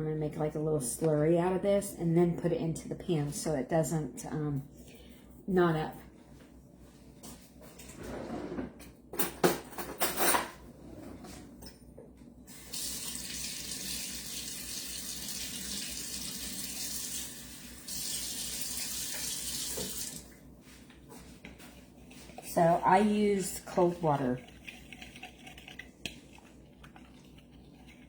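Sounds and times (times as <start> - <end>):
kitchen tap running water: 12.5 - 20.4.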